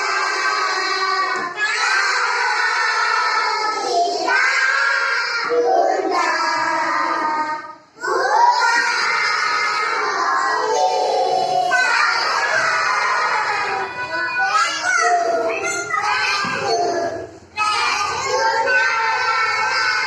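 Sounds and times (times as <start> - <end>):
child singing: 0.0 - 20.0.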